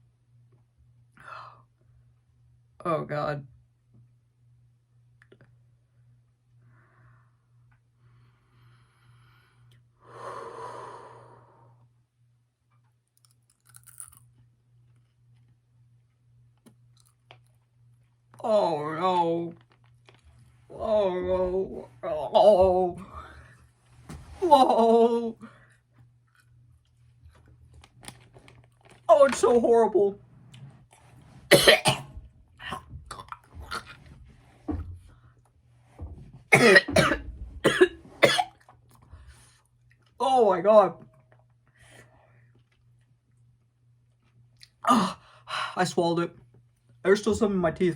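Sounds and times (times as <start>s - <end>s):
person sighing heavily: 10.0s - 11.6s, 44.8s - 45.8s
steady low hum: 13.5s - 47.9s
person coughing: 31.5s - 32.1s, 36.5s - 38.6s, 44.8s - 45.2s
throat clearing: 31.5s - 32.1s, 36.5s - 38.5s, 44.8s - 45.2s.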